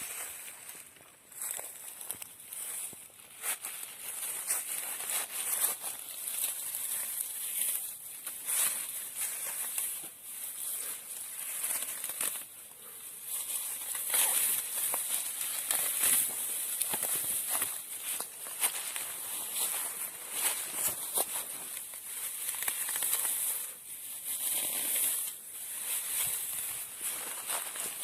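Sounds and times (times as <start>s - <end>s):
dry leaves and twigs rustling: 0.0s - 28.0s.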